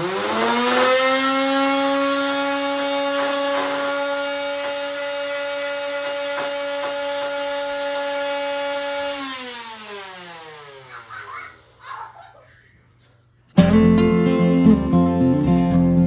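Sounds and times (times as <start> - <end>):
power tool motor whining: 0.0 - 11.1.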